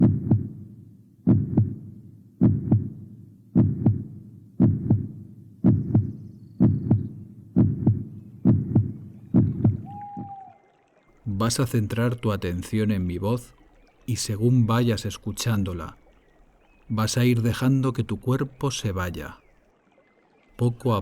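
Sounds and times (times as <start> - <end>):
heartbeat thumps: 0.0 - 10.4.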